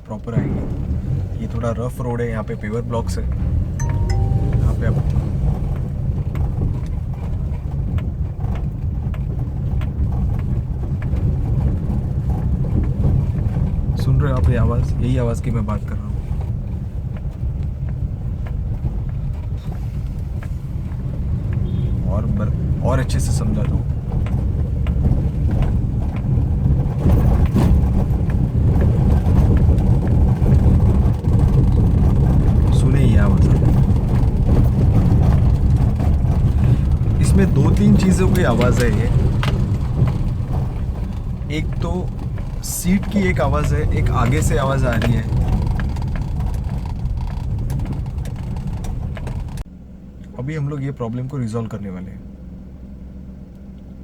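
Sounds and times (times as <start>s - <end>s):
road and engine rumble: 0.0s - 54.0s
car front end rattling and knocking: 22.6s - 49.6s.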